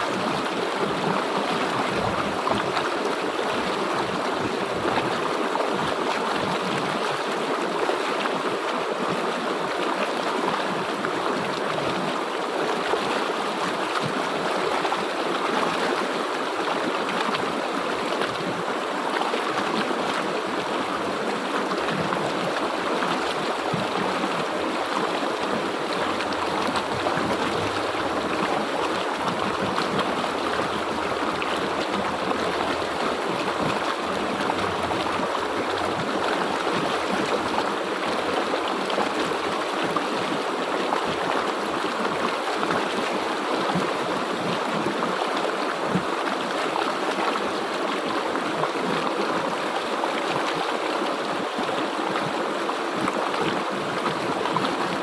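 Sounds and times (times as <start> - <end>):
river water rushing: 0.0 - 55.0.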